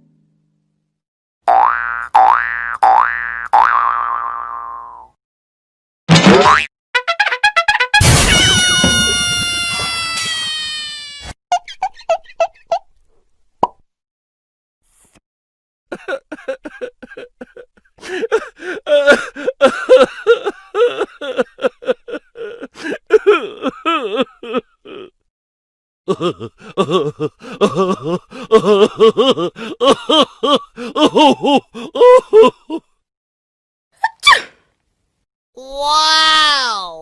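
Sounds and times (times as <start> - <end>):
person vocalising wordlessly: 35.6 - 37.0.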